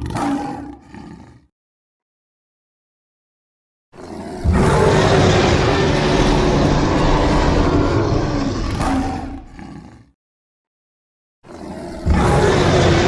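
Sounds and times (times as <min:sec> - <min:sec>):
monster roar: 0:04.0 - 0:10.2, 0:11.5 - 0:13.0.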